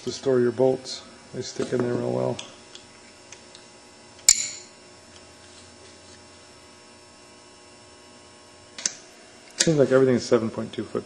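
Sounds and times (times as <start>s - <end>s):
metallic clink: 4.3s - 4.7s.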